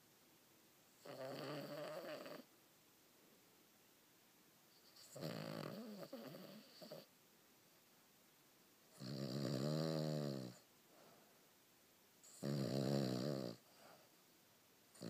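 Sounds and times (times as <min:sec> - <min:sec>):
dog snoring: 0:01.0 - 0:02.5, 0:04.8 - 0:07.1, 0:08.9 - 0:10.7, 0:12.2 - 0:13.9.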